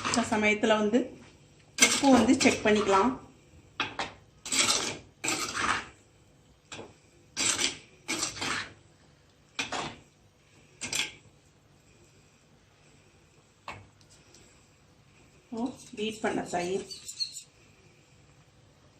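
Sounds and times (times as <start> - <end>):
spoon scraping a cooking pot: 1.8 - 3.2, 3.8 - 6.0, 6.7 - 8.8, 15.6 - 17.6.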